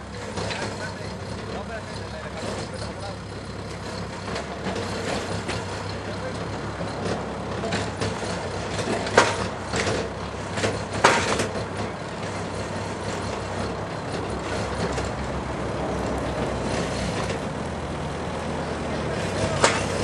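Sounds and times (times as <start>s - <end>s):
large engine running: 0.0s - 20.0s
sharp knocks: 7.1s - 11.9s.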